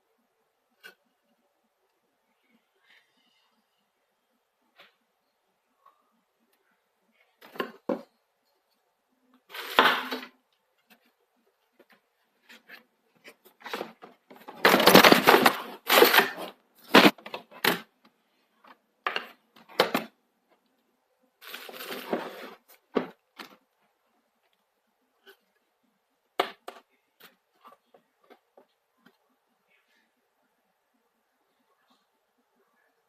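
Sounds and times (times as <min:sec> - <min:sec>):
packaging rustling and scraping: 0:09.5 - 0:10.3, 0:12.4 - 0:17.8, 0:21.4 - 0:23.1.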